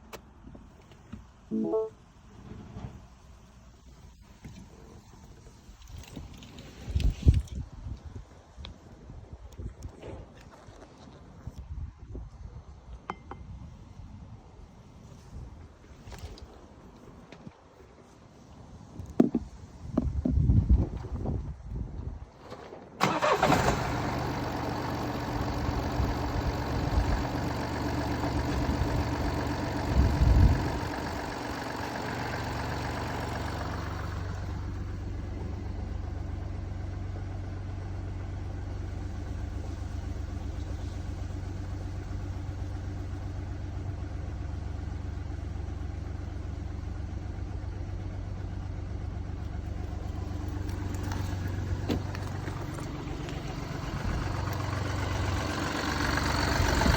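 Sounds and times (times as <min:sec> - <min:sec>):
engine hiss: 0:23.0 - 0:35.3
diesel engine starting and idling: 0:23.0 - 0:56.9.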